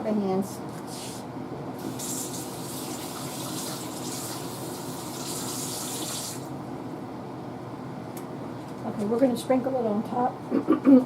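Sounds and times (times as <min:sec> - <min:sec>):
kitchen faucet running water: 0:01.8 - 0:06.5.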